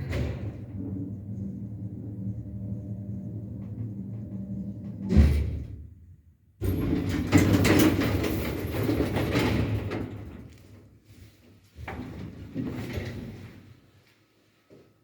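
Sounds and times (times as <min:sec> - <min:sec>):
elevator rattling clatter: 0:06.6 - 0:10.4.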